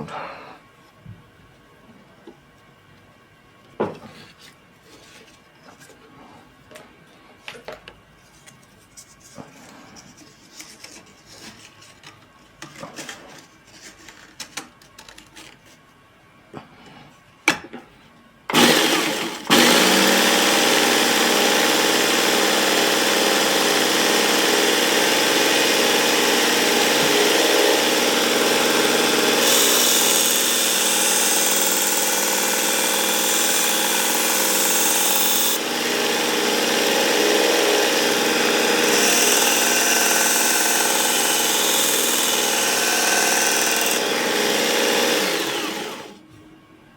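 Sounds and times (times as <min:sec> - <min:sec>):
belt sharpener whirring: 0:18.5 - 0:46.2.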